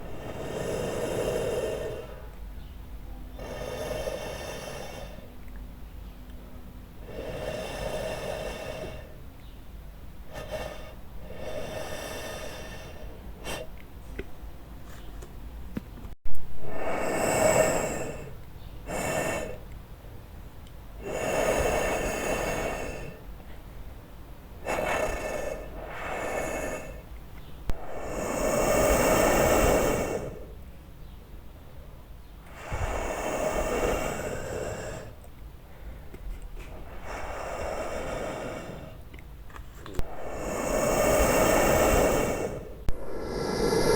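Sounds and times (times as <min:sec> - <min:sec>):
breathy raspy hisses: 0:00.0 - 0:02.4, 0:03.3 - 0:05.4, 0:07.0 - 0:09.2, 0:10.2 - 0:13.7, 0:16.7 - 0:19.6, 0:21.0 - 0:23.3, 0:24.6 - 0:27.1, 0:27.7 - 0:30.6, 0:32.5 - 0:39.1, 0:39.8 - 0:43.9.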